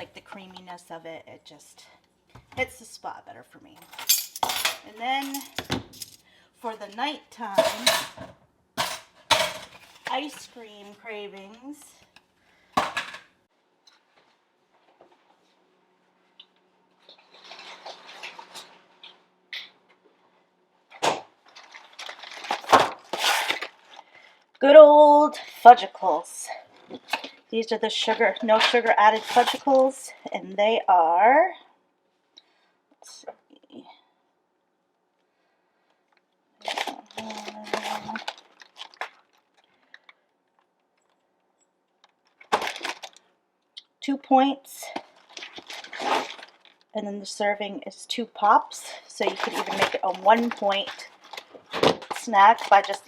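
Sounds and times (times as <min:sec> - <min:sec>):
packaging crinkling and rustling: 0:21.4 - 0:24.0, 0:36.6 - 0:41.3, 0:42.0 - 0:43.3, 0:45.0 - 0:46.9, 0:49.2 - 0:53.0.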